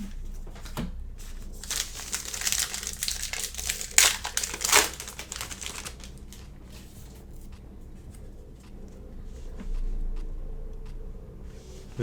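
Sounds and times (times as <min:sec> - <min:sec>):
wrapper tearing and crinkling: 0:01.2 - 0:06.5
wrapper rustling: 0:01.2 - 0:07.1.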